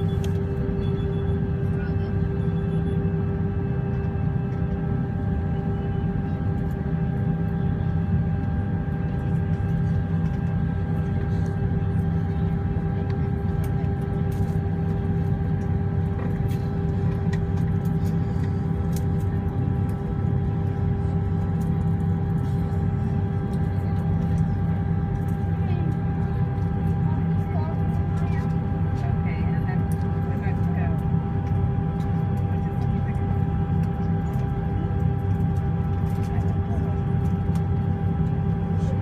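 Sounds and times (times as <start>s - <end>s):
high engine whine: 0.0s - 39.0s
jet engines rumbling: 0.0s - 39.0s.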